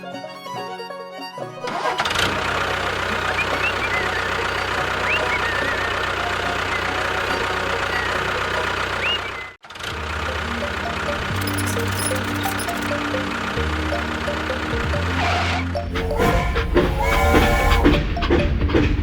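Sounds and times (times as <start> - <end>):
fiddle music: 0.0 - 9.4, 10.1 - 18.8
motor running with low pulse: 10.1 - 18.2
short high chirps: 11.4 - 12.9.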